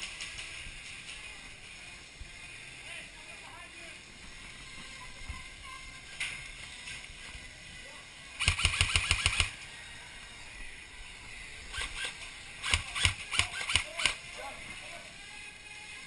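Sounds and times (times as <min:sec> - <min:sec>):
airsoft gun firing: 0:08.4 - 0:09.6, 0:11.8 - 0:14.2.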